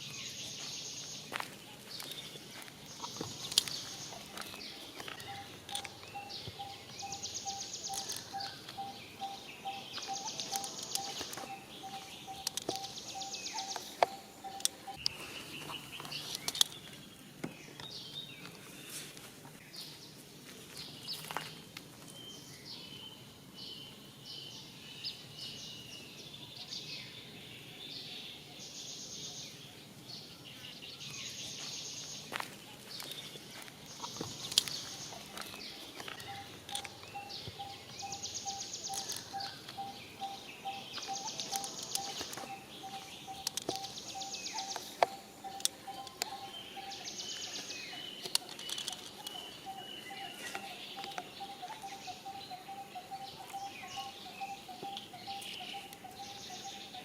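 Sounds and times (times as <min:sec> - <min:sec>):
rustles: 0:00.0 - 0:22.7, 0:30.0 - 0:52.4
sharp clicks: 0:07.9 - 0:08.6, 0:10.2 - 0:15.2, 0:38.9 - 0:39.6, 0:41.2 - 0:46.4, 0:48.2 - 0:49.5.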